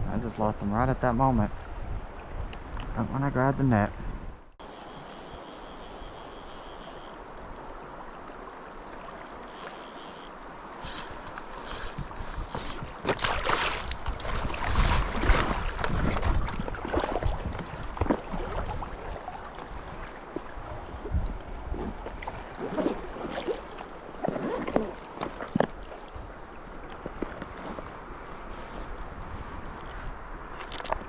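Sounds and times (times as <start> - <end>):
river water running: 4.5 - 31.0
rumbling and splashing with knocks: 11.0 - 26.1.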